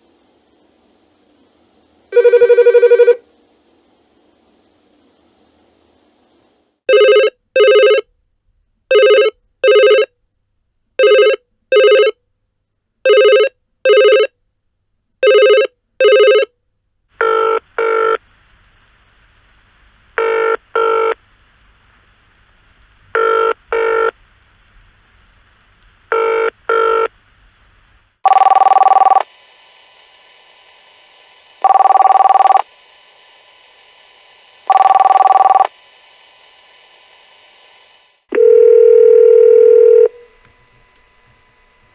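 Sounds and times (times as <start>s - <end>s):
electronic double telephone ring: 2.2s - 3.2s, 6.9s - 8.0s, 11.0s - 12.2s, 13.1s - 14.3s, 15.2s - 16.5s, 28.3s - 29.2s, 31.6s - 32.6s, 34.7s - 35.7s, 38.3s - 40.3s
single long telephone ring: 38.3s - 40.4s
telephone double ring: 38.3s - 40.4s.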